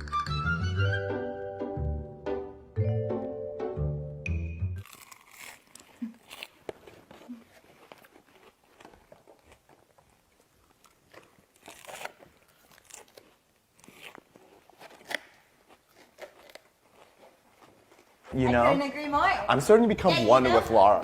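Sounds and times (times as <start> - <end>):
irregular crunches and clicks: 4.9 - 18.2.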